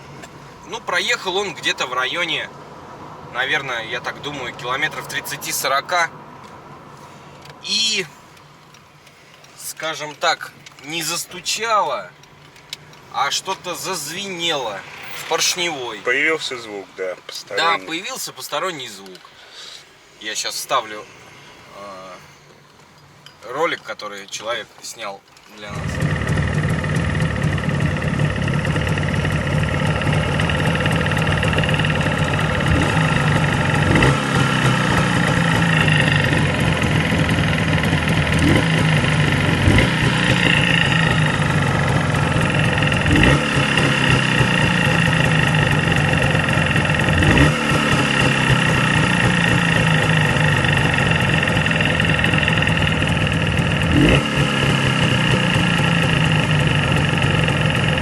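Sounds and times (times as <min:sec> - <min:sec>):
ringing trill-like engine noise: 0:11.0 - 0:18.3, 0:25.7 - 0:58.0
two-stroke engine running: 0:25.8 - 0:58.0.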